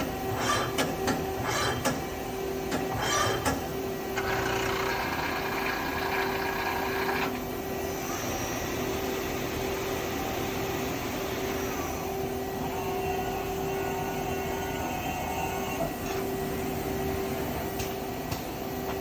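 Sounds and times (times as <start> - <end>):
machine hum: 4.1 - 7.6.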